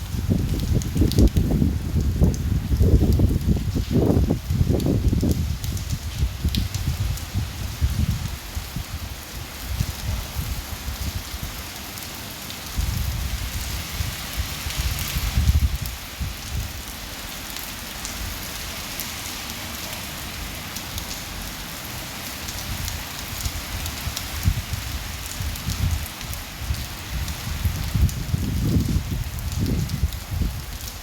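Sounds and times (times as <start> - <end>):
wind gusting in low rumbles: 0.0 - 11.6, 12.7 - 16.9, 22.5 - 31.0
rain pattering: 0.0 - 31.0.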